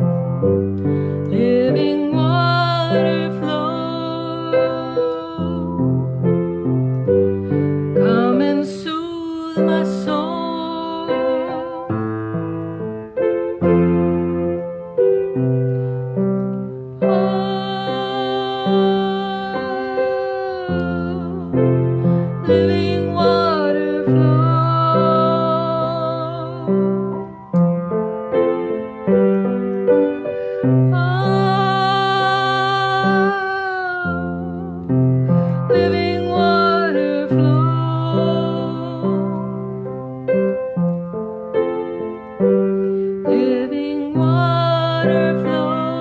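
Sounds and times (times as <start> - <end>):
piano playing slow chords: 0.0 - 46.0
woman singing a held note: 1.3 - 6.0, 17.0 - 27.1.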